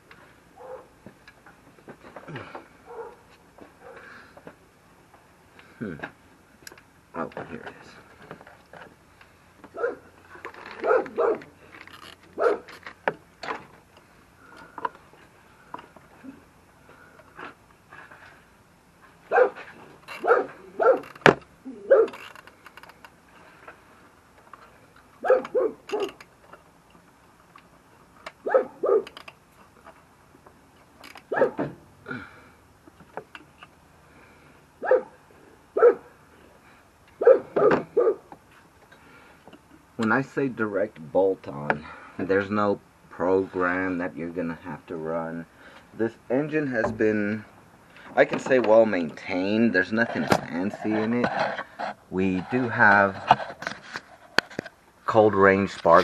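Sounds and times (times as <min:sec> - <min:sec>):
dog barking: 0:00.6 - 0:00.9, 0:02.9 - 0:03.2, 0:09.8 - 0:10.1, 0:10.8 - 0:11.4, 0:12.4 - 0:12.7, 0:19.3 - 0:19.6, 0:20.2 - 0:21.1, 0:21.9 - 0:22.2, 0:25.2 - 0:26.2, 0:28.4 - 0:29.1, 0:31.3 - 0:31.6, 0:34.8 - 0:35.2, 0:35.8 - 0:36.1, 0:37.2 - 0:38.2.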